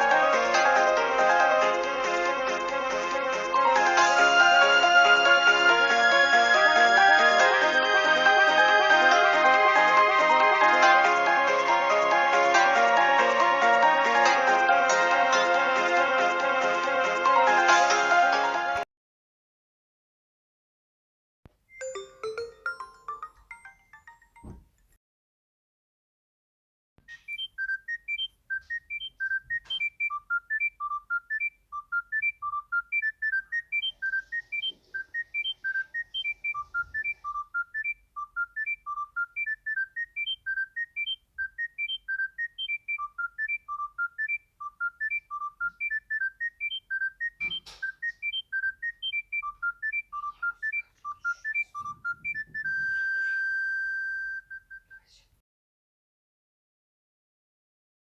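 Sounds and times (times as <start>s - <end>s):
phone ringtone beeping melody: 3.2s - 15.7s, 21.7s - 24.6s, 27.4s - 54.6s.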